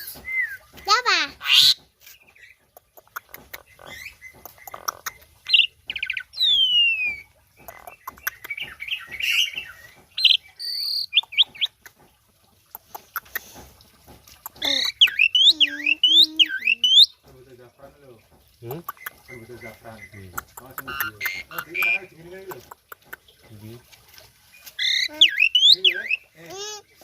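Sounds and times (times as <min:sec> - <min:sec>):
starling singing whistles and chirps: 0:00.0 - 0:02.6, 0:03.2 - 0:11.8, 0:14.6 - 0:17.2, 0:18.9 - 0:22.2, 0:24.5 - 0:26.4.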